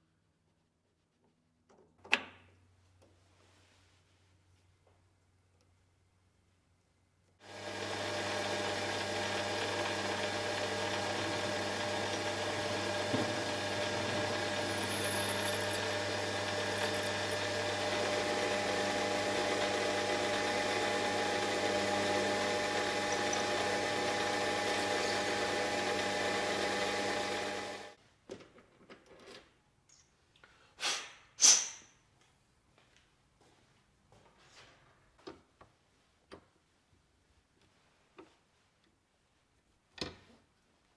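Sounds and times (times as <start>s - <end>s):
electric power tool humming: 7.5s - 28.0s.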